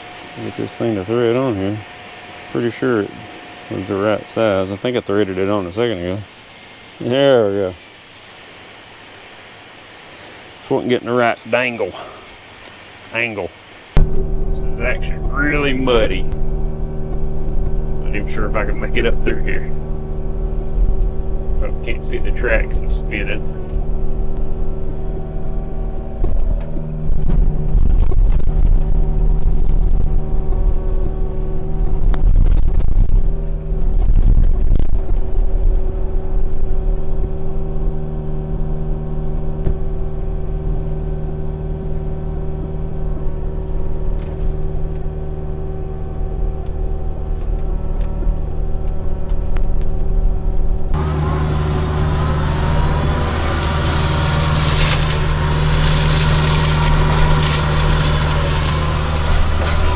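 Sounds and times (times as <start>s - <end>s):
excavator diesel engine running: 0.0s - 17.2s, 50.8s - 59.9s
machinery clatter: 51.0s - 59.9s.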